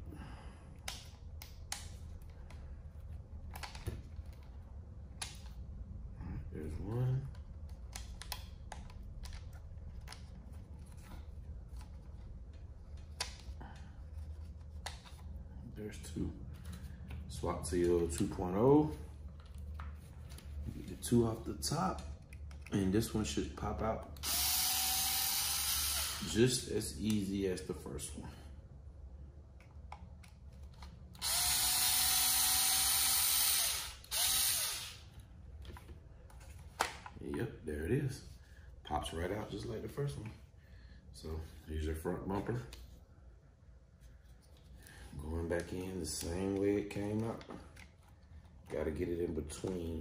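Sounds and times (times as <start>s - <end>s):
electric screwdriver running: 24.2s - 26.3s, 31.2s - 35.0s.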